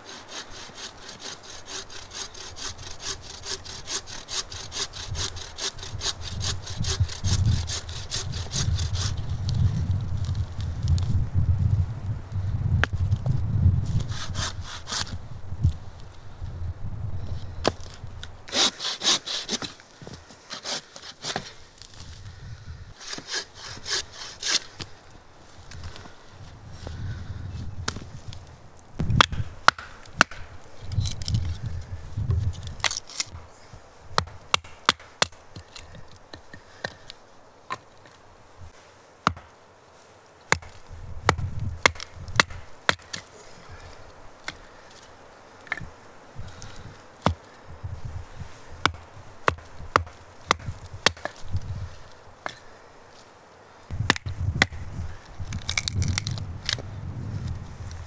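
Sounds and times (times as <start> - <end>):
hand saw cutting wood: 0.0 - 9.2, 14.0 - 15.2, 18.5 - 19.8, 20.5 - 21.5, 23.0 - 24.8
wood knocking and cracking: 55.4 - 56.8.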